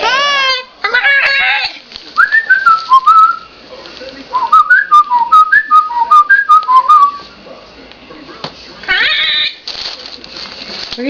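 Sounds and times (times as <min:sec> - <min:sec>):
whistled melody: 0:04.4 - 0:07.2.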